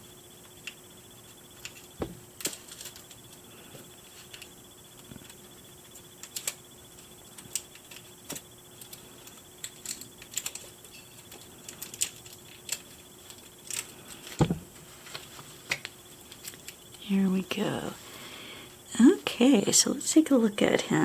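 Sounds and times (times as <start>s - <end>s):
dull knock: 2.0s - 2.2s, 14.4s - 14.7s.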